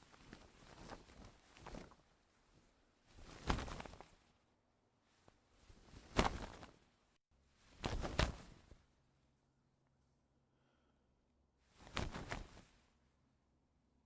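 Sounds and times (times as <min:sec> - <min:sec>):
sail cloth flapping in wind: 0:00.0 - 0:04.3, 0:05.6 - 0:06.9, 0:07.7 - 0:08.8, 0:11.8 - 0:12.8.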